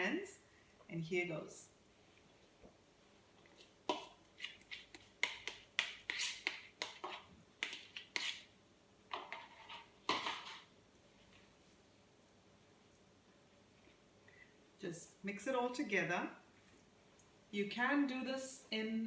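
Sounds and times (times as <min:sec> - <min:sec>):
hands mixing wet dough: 0:01.9 - 0:11.8.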